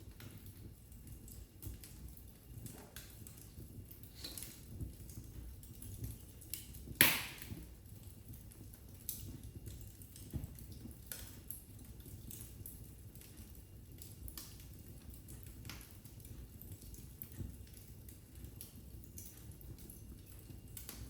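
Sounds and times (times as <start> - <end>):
low rumble of flames: 0.0 - 21.0
wood fire crackling: 0.0 - 21.0
loud fire pop: 7.0 - 7.6.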